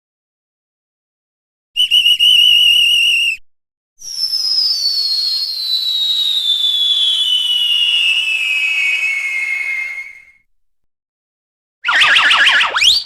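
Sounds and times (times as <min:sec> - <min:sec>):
cartoon falling whistle: 0:04.0 - 0:10.5, 0:11.8 - 0:13.0
warbling whistle tone: 0:04.0 - 0:10.5, 0:11.8 - 0:13.0.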